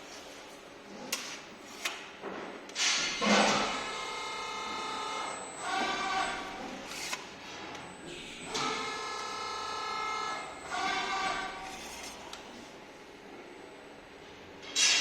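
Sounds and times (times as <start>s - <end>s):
hydraulic pump whining: 3.4s - 12.4s.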